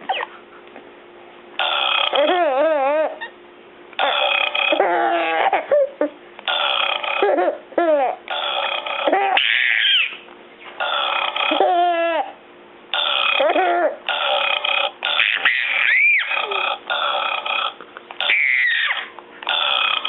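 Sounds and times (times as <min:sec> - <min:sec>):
baby giggling: 0:02.0 - 0:03.3, 0:04.0 - 0:06.2, 0:06.9 - 0:10.2, 0:11.1 - 0:12.4, 0:13.3 - 0:17.1, 0:18.2 - 0:20.0
loud burps: 0:06.5 - 0:07.3, 0:13.0 - 0:15.2, 0:16.4 - 0:17.8, 0:19.5 - 0:20.0.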